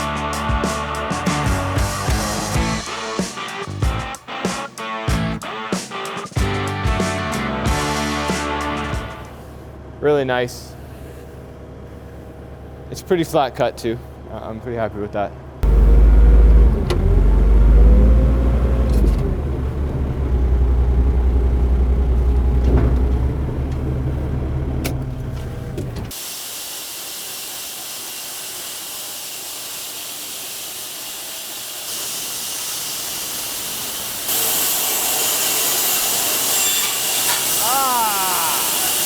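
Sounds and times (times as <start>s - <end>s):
high hiss of sawing: 26.1s - 39.0s
sawmill motor humming: 32.5s - 39.0s.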